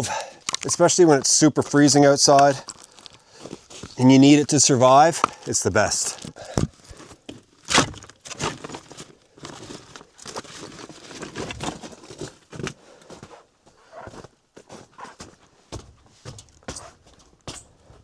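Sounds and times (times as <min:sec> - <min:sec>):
paper crinkling: 0:00.4 - 0:04.1, 0:05.1 - 0:12.8
firewood knocking: 0:06.1 - 0:08.6.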